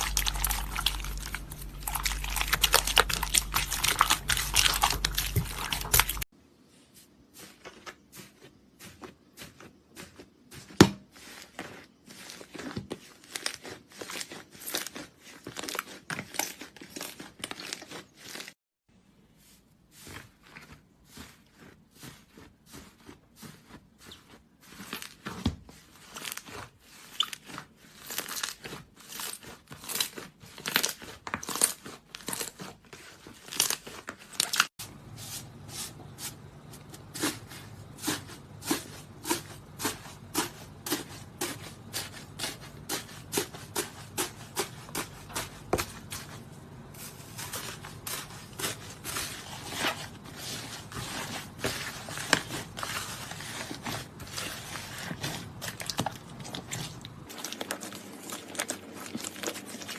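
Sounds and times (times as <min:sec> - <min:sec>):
slime crackling and popping: 0:00.0 - 0:06.3.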